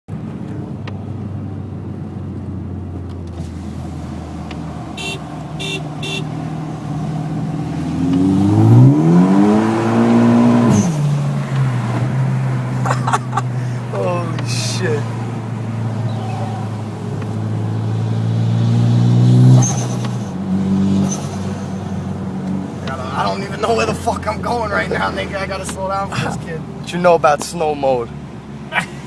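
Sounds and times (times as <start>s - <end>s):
car engine revving: 0.1s - 29.0s.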